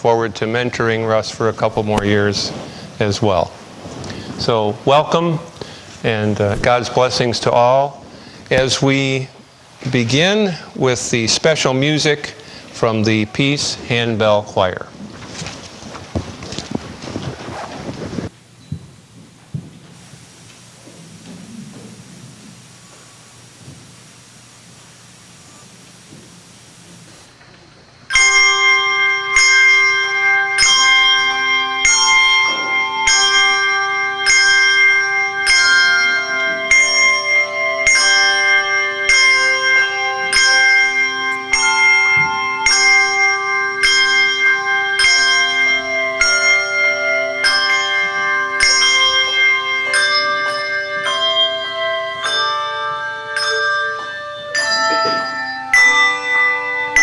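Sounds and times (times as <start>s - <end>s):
handbell chords ringing: 28.1s - 57.0s
long-held low bell note: 28.1s - 57.0s.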